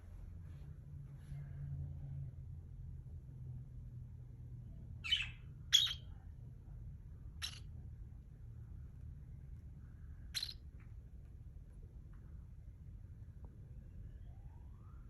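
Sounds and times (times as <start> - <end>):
cockatiel chirps: 5.0 - 6.1, 7.4 - 7.7, 10.3 - 10.6.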